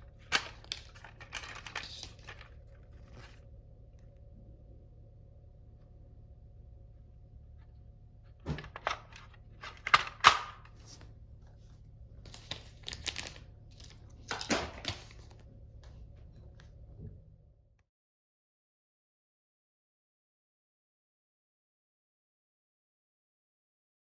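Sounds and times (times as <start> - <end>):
packaging crinkling: 0.0 - 3.4, 12.3 - 15.4
low hum: 0.0 - 17.8.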